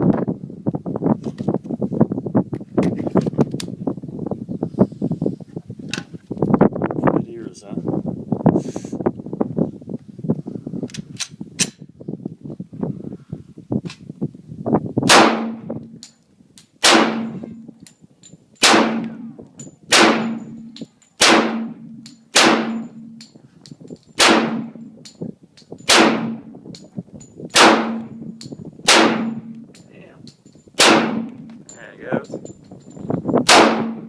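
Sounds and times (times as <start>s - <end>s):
pistol shots: 15.1s - 15.7s, 16.8s - 17.5s, 18.6s - 19.3s, 19.9s - 23.2s, 24.2s - 24.8s, 25.9s - 26.5s, 27.5s - 28.2s, 28.8s - 29.6s, 30.8s - 31.5s, 33.4s - 34.0s
metallic ringing clang: 19.0s - 23.4s.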